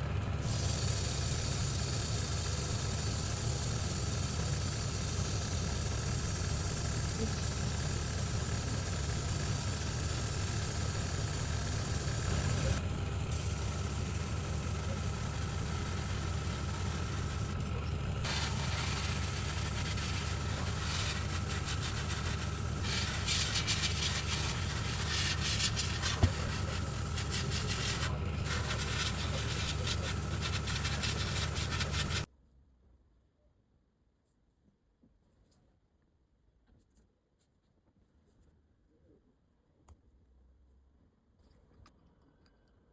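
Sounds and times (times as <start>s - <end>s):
small motor running with hiss: 0.0s - 32.3s.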